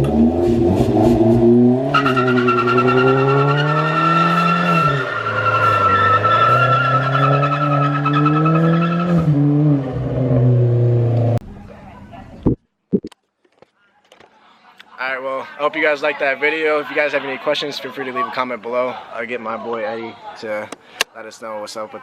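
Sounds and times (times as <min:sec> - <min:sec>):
car engine revving: 0:00.0 - 0:11.4
tyre squeal: 0:01.9 - 0:09.4.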